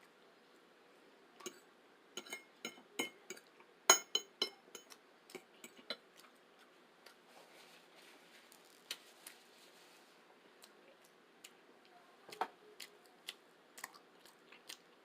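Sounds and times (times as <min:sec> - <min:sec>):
utensil clinking against dish: 0:02.2 - 0:06.0.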